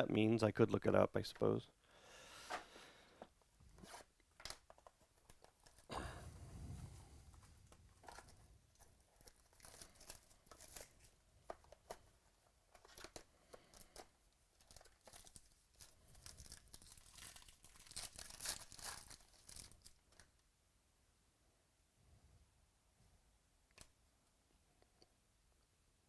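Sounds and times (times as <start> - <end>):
cards clicking and rustling: 3.8 - 5.9, 7.4 - 20.3
packaging crinkling and tearing: 7.6 - 12.0, 12.7 - 20.4.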